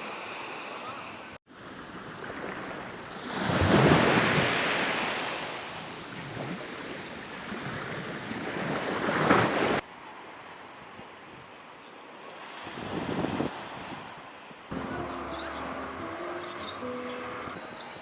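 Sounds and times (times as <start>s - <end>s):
sea waves breaking: 0.0s - 10.7s.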